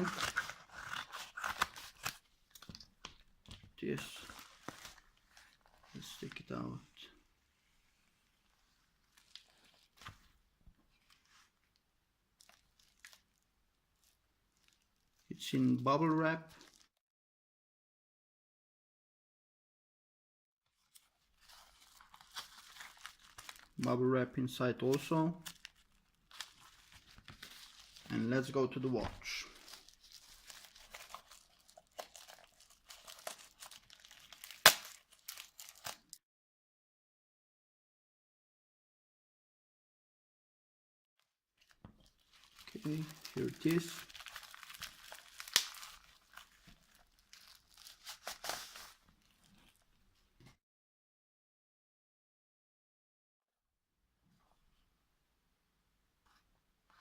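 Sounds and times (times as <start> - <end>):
packaging rustling and crinkling: 0.0 - 6.5, 12.4 - 13.4, 20.7 - 23.9, 25.0 - 36.2, 41.6 - 50.0
soft crackles: 24.8 - 36.2
bubble wrap snap: 30.5 - 36.1, 42.7 - 46.5.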